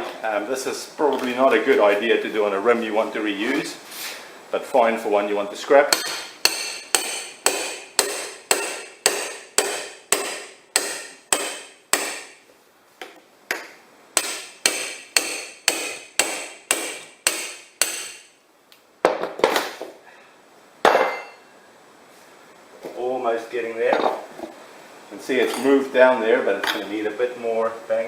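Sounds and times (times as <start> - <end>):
hammer striking metal bar: 5.9 - 12.4, 14.2 - 18.3.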